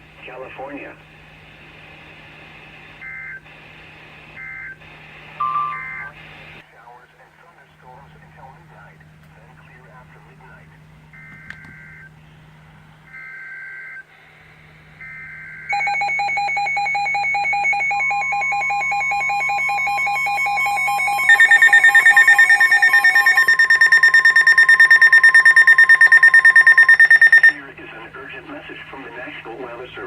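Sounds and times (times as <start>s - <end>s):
steady warning tone: 2.4s - 6.6s, 13.0s - 27.7s
loud rapid beeping: 5.4s - 6.1s, 15.7s - 27.6s
pulsing alarm tone: 5.4s - 6.1s, 15.0s - 27.6s
screeching data tone bursts: 15.7s - 27.6s.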